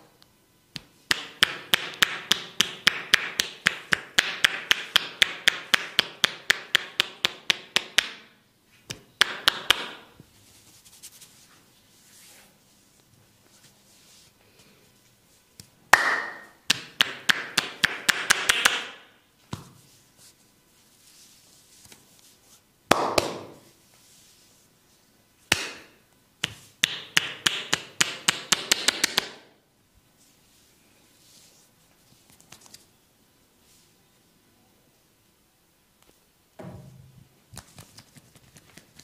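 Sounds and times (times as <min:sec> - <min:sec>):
single slaps: 0:25.5 - 0:29.4.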